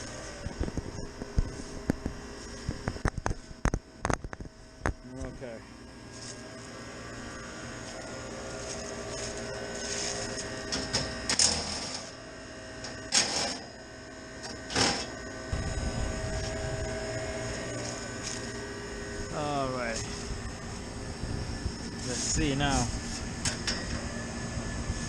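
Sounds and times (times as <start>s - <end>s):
noisy handling sounds: 0.0s - 5.4s, 6.0s - 12.1s, 14.4s - 20.9s
hvac unit humming: 0.0s - 25.0s.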